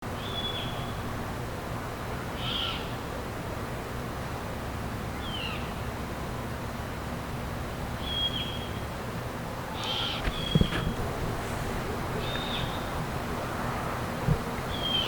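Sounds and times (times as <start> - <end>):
steady low hum: 8.7 - 15.0.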